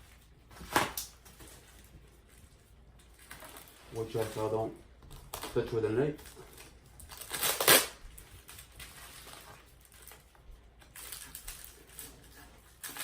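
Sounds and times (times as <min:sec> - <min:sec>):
knife cutting packaging: 0:05.3 - 0:10.2, 0:10.8 - 0:13.0.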